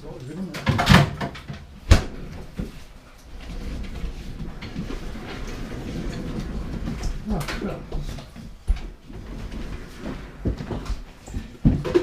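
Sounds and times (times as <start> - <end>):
fridge freezer sliding across floor: 2.2 - 8.3, 9.0 - 11.2.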